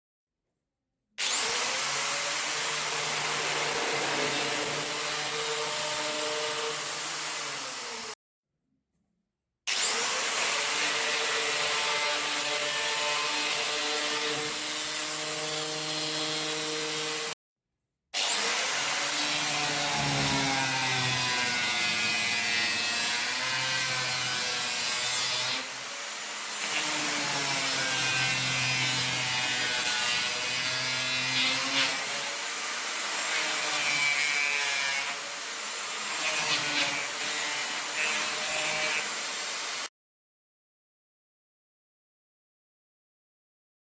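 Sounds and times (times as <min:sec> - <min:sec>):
power saw whining: 0:01.2 - 0:08.2
saw grinding into plastic pipe: 0:36.0 - 0:39.8.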